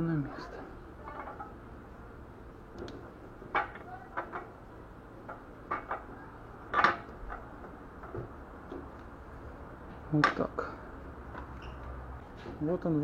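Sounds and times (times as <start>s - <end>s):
metal clinks and knocks: 1.0s - 1.6s.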